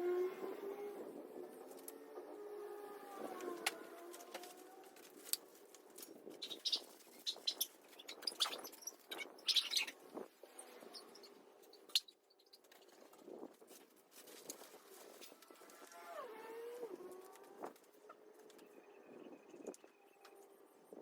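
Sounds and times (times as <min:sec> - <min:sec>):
faint bird chirps: 0:06.4 - 0:13.1.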